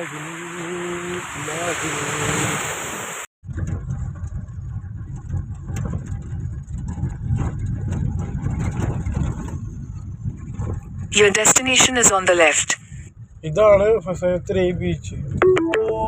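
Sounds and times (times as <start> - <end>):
wind hiss: 0.0 - 3.3
car engine and road rumble: 0.0 - 15.4.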